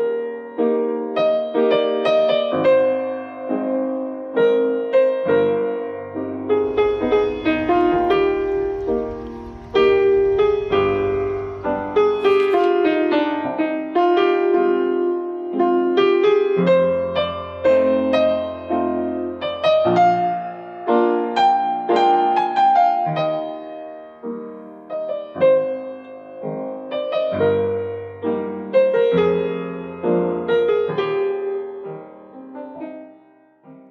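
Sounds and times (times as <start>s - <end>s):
gentle piano melody: 0.0s - 13.0s
slow gentle piano music: 0.0s - 33.9s.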